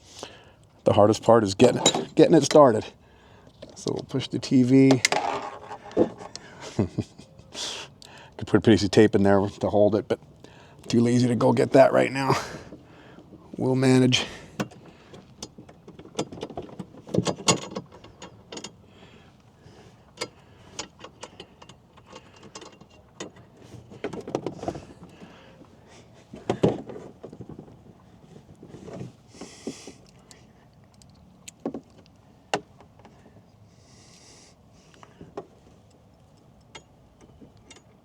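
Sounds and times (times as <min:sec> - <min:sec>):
metal bracket knocks and scrapes: 0:01.6 - 0:02.2, 0:04.9 - 0:06.4.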